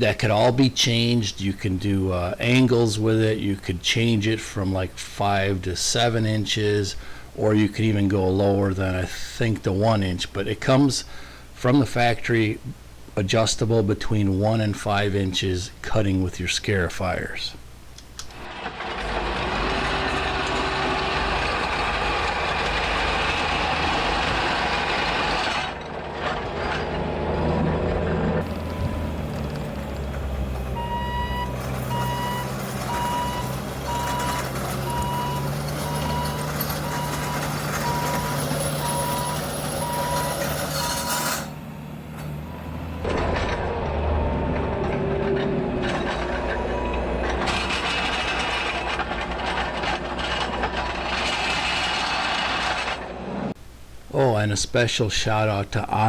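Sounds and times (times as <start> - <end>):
diesel engine working under load: 18.4 - 53.6
grading attachment tearing gravel: 18.5 - 43.6, 47.4 - 53.0
reverse alarm beeping: 30.8 - 41.3.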